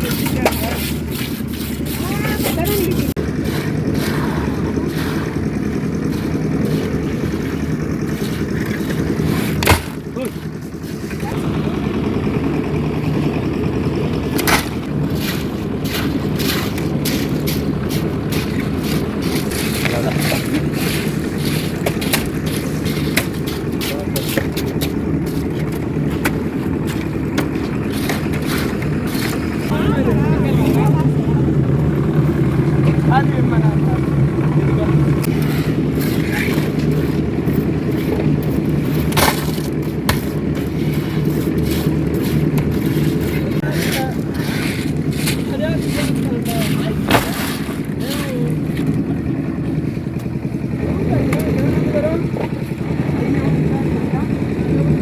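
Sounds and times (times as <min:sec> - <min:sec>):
short scraping sounds: 0:00.0 - 0:09.9
engine rumbling: 0:00.0 - 0:55.0
mixer drum rattling concrete: 0:00.0 - 0:55.0
sharp knocks: 0:09.5 - 0:10.0.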